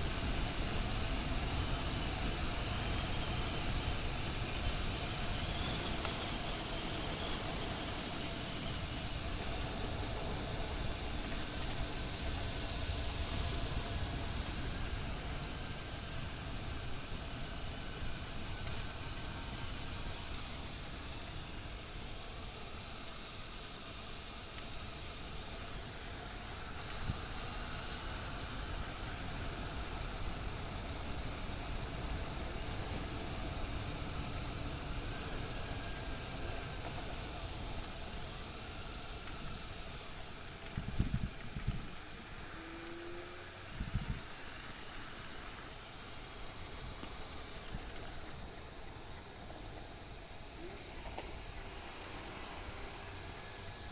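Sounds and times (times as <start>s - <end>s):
wind and road noise: 25.0s - 53.9s.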